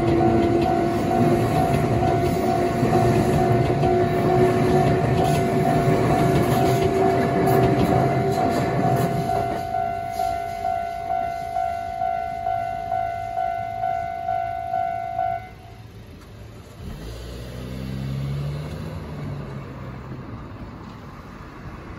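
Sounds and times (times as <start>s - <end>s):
level crossing warning bell: 0.0s - 15.8s.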